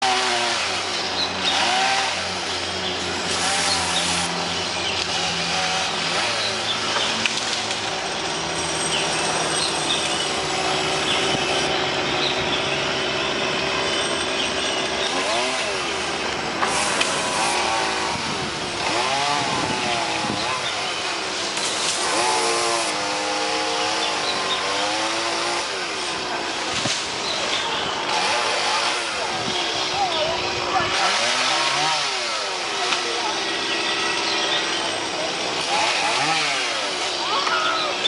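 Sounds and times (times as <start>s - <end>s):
chainsaw engine running: 0.0s - 38.0s.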